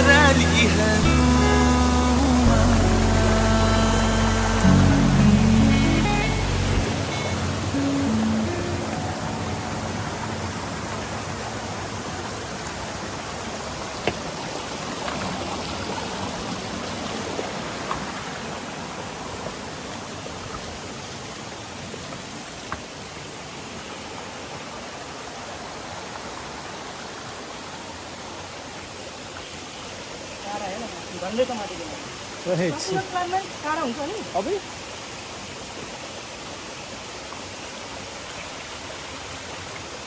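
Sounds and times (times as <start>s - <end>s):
stream and waterfall rushing: 0.0s - 40.0s.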